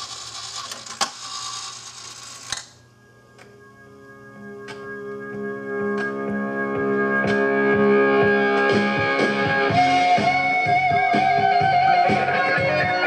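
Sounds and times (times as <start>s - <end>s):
jukebox playing guitar music: 4.2s - 13.0s.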